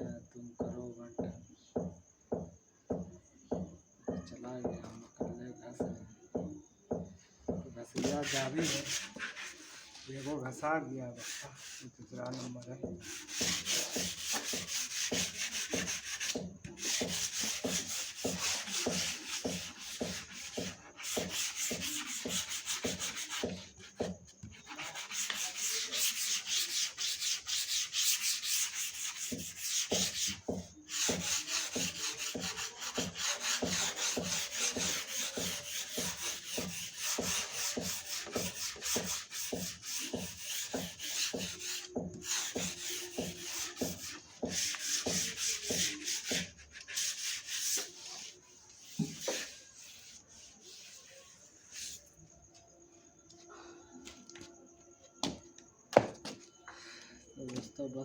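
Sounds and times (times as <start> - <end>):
sandpaper rubbing on wood: 8.0 - 52.0.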